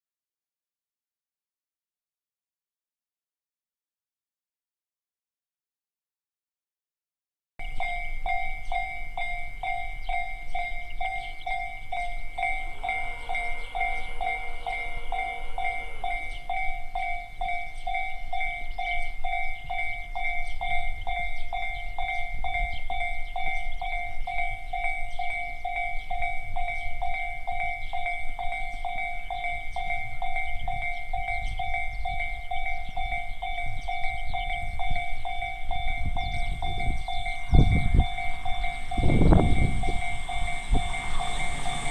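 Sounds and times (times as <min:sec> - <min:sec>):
level crossing alarm dings: 0:07.6 - 0:40.9
low rumble: 0:11.9 - 0:16.9, 0:36.4 - 0:41.9.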